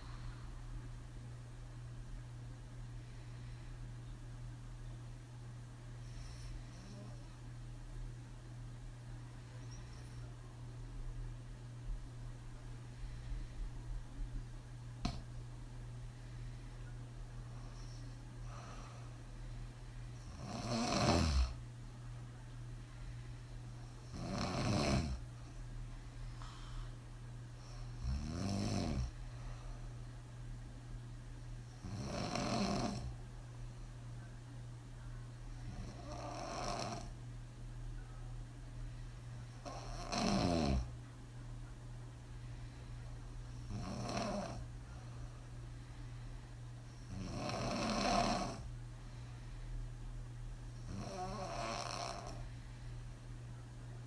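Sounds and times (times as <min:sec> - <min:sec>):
soft breath: 0:00.0 - 0:01.0, 0:02.8 - 0:04.2, 0:12.5 - 0:15.3, 0:15.9 - 0:20.4, 0:22.7 - 0:24.0, 0:25.4 - 0:28.0, 0:29.1 - 0:30.2, 0:42.1 - 0:43.5, 0:44.6 - 0:46.9, 0:48.6 - 0:50.0, 0:52.0 - 0:53.4
woman snoring: 0:20.2 - 0:21.6, 0:24.0 - 0:25.2, 0:27.7 - 0:29.2, 0:31.8 - 0:33.2, 0:35.6 - 0:37.2, 0:39.6 - 0:40.9, 0:43.6 - 0:44.7, 0:47.0 - 0:48.7, 0:50.8 - 0:52.5.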